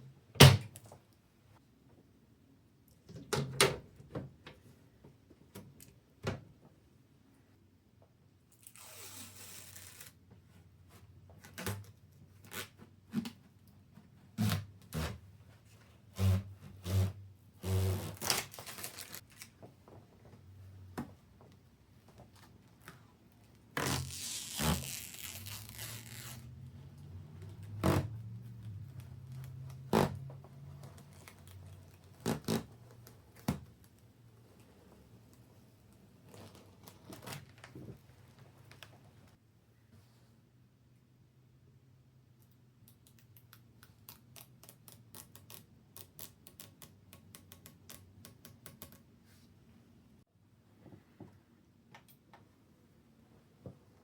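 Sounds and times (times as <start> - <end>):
tearing sound: 8.6 - 10.2, 23.8 - 26.6.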